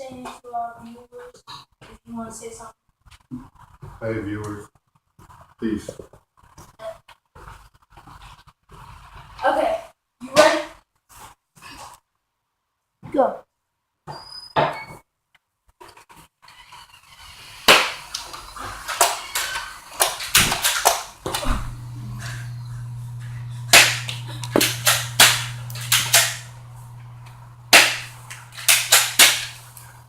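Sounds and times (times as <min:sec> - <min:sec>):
foam-dart blasters firing: 0:17.6 - 0:18.2, 0:23.7 - 0:26.5, 0:27.7 - 0:29.7
steady low hum: 0:21.2 - 0:30.0.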